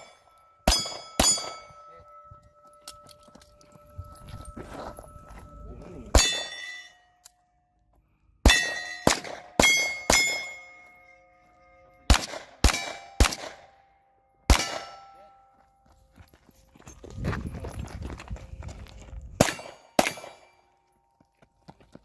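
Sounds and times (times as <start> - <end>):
metallic clang of steel targets: 0.0 - 3.6, 6.1 - 7.4, 8.4 - 15.5, 19.4 - 20.8
pistol shots: 8.4 - 10.6, 12.1 - 13.7, 14.5 - 15.1, 19.4 - 20.6.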